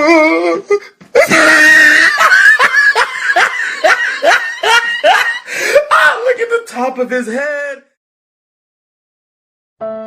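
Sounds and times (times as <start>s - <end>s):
man laughing hysterically: 1.2s - 6.2s.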